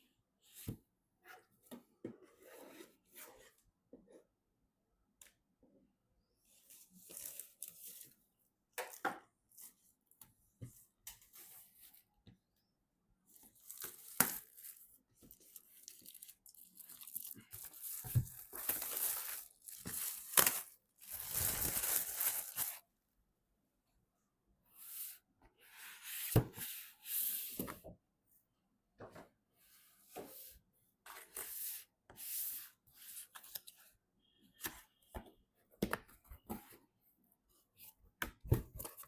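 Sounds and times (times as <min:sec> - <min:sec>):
packaging crinkling and tearing: 0:15.8 - 0:22.8.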